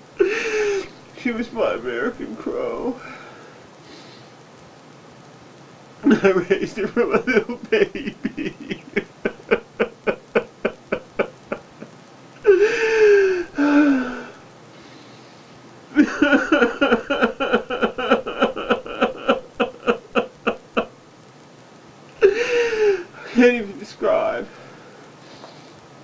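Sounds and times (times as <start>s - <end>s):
man sobbing: 0.2s - 1.0s, 6.0s - 14.4s, 15.9s - 20.9s, 22.2s - 24.6s
man wailing: 12.4s - 14.3s, 16.0s - 20.8s, 22.2s - 23.1s.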